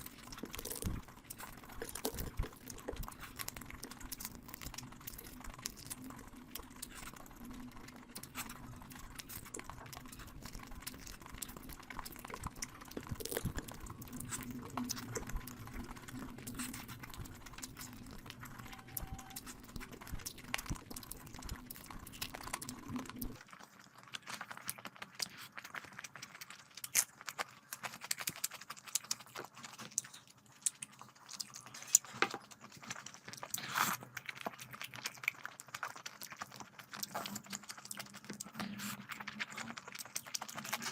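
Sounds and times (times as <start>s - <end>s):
chewing and mouth smacking: 0.0s - 40.9s
low background hum: 0.0s - 40.9s.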